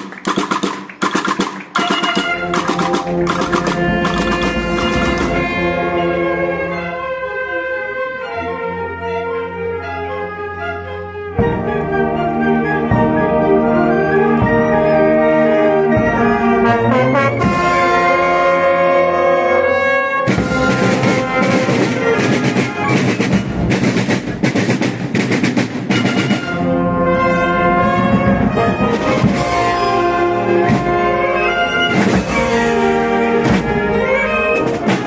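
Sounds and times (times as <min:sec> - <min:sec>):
rapid percussion strokes: 0:00.0 - 0:06.8, 0:20.3 - 0:35.0
concert band playing: 0:00.0 - 0:07.9, 0:11.4 - 0:35.0.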